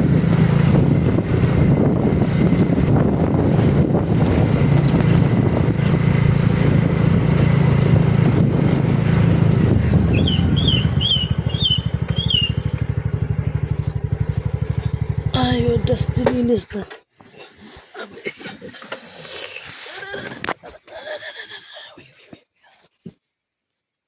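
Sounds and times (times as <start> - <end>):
vehicle engine rumbling: 0.0 - 16.9
high chirps: 10.1 - 12.8, 13.8 - 14.5.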